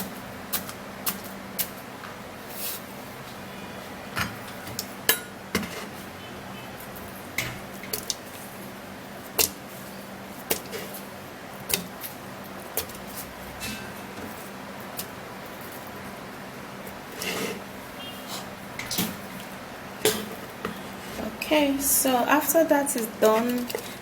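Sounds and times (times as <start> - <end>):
utensils and dishes clinking: 13.6 - 14.1, 18.3 - 19.3, 20.0 - 20.8, 23.2 - 24.0.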